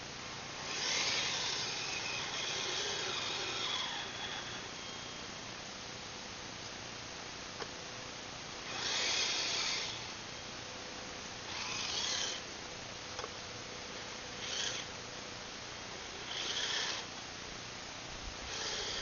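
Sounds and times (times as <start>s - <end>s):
electric motor and gears whining: 0.6s - 5.4s, 8.5s - 10.2s, 11.4s - 12.5s, 14.3s - 15.0s, 16.0s - 17.1s, 18.4s - 19.0s.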